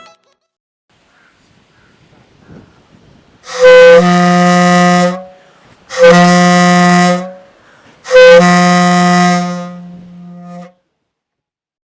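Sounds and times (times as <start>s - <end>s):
train horn blasts: 3.4s - 10.8s.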